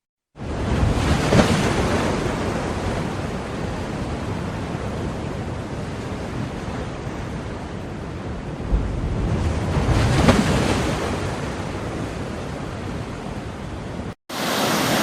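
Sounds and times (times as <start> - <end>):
ocean waves breaking: 0.4 - 15.0
surf washing out hiss: 14.3 - 15.0.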